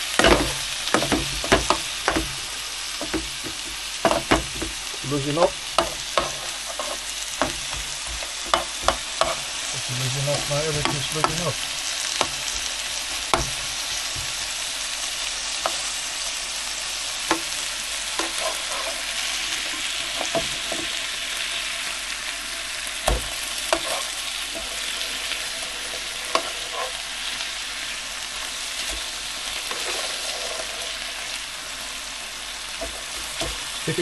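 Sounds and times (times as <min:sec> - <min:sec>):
spoon scraping a pan: 0:00.0 - 0:14.6, 0:15.5 - 0:16.0, 0:17.3 - 0:27.9, 0:28.7 - 0:31.4
food sizzling in a pan: 0:00.0 - 0:34.0.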